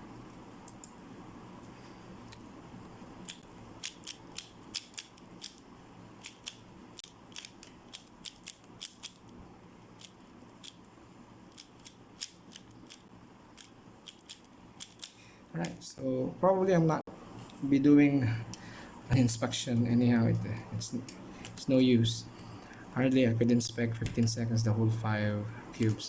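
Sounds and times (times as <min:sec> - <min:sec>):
puzzle cube plastic clicks: 0:03.2 - 0:05.6, 0:06.2 - 0:09.3, 0:11.5 - 0:15.2.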